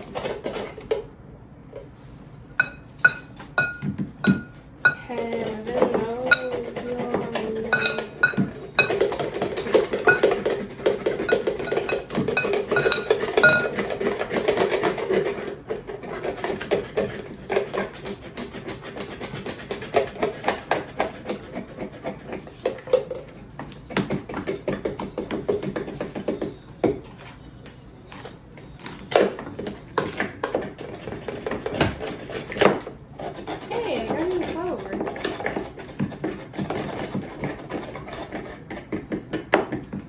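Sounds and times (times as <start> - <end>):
utensils and dishes clinking: 2.5 - 21.6.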